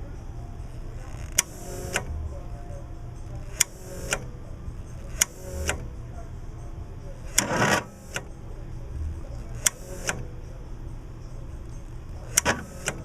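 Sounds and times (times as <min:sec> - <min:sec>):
faint whirr: 0:00.0 - 0:13.0
steady low hum: 0:00.0 - 0:13.0
generator starter clicks: 0:03.5 - 0:04.4, 0:09.6 - 0:10.3, 0:12.2 - 0:13.0.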